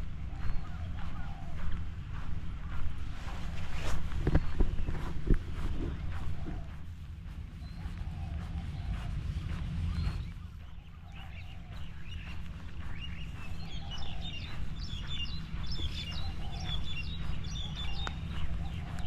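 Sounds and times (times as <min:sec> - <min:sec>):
birds chirping: 0:00.0 - 0:19.0
steady low rumble: 0:00.0 - 0:19.0.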